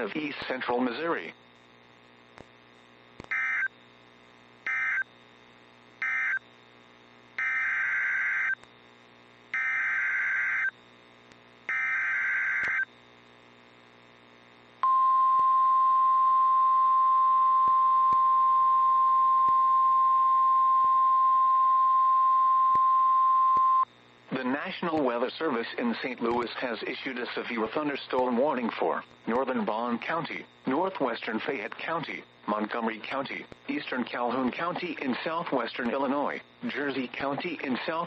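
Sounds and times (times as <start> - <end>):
steady warning alarm tone: 3.3 - 3.7, 4.7 - 5.1, 6.0 - 6.4, 7.4 - 8.6, 9.6 - 10.7, 11.7 - 12.9.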